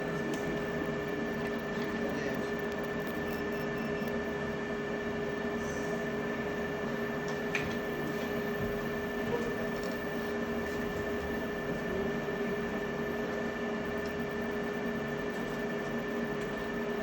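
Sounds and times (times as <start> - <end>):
steady mechanical drone: 0.0 - 17.0.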